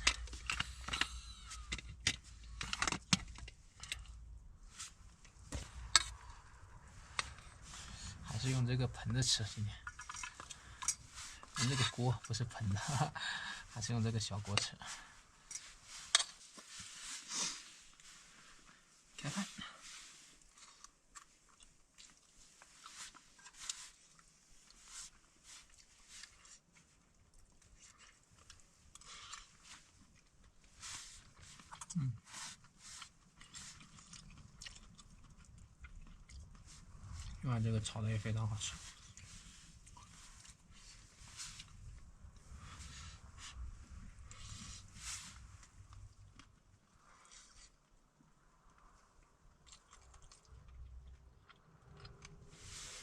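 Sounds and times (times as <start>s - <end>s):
person chewing food: 0.0s - 8.3s, 9.6s - 11.8s, 20.3s - 37.4s, 38.8s - 53.0s.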